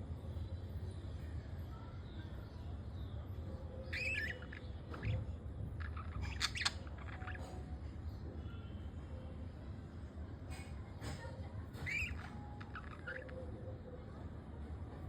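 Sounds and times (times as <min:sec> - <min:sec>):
budgerigars squawking: 0:03.9 - 0:07.6.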